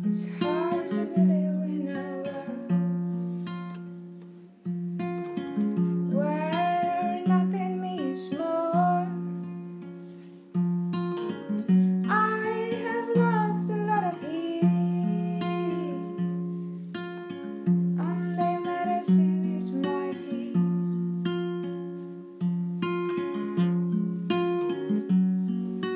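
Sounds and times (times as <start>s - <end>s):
woman singing: 0.0s - 2.9s, 6.1s - 9.6s, 12.0s - 16.6s, 18.0s - 21.0s
acoustic guitar picking: 0.0s - 25.9s.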